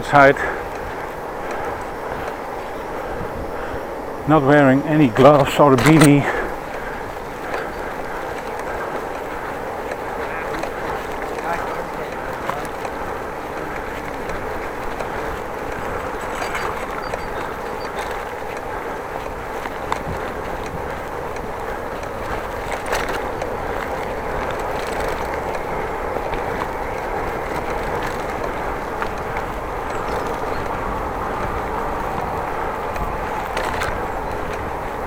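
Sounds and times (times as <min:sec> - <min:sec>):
bicycle tyre and road rumble: 0:00.0 - 0:35.0
scattered clicks: 0:07.4 - 0:30.9.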